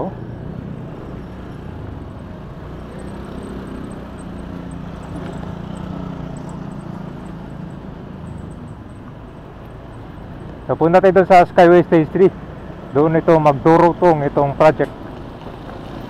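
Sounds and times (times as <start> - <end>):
low engine hum: 0.0 - 11.2
road noise: 0.0 - 16.0.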